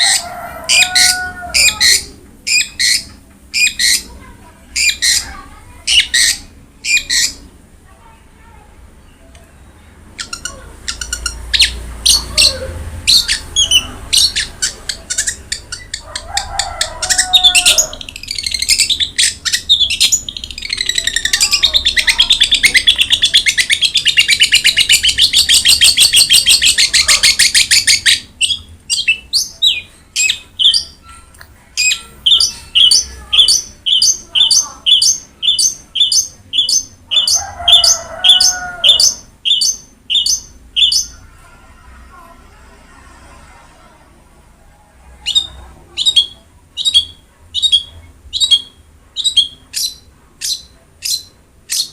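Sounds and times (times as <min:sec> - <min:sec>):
fast bird trill: 0:17.0 - 0:31.0.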